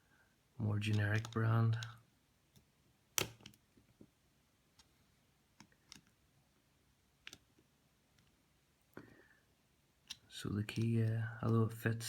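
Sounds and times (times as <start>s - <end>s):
small clicks and taps of a lock: 0.8s - 4.1s, 5.6s - 6.2s, 7.2s - 8.4s, 10.0s - 11.6s.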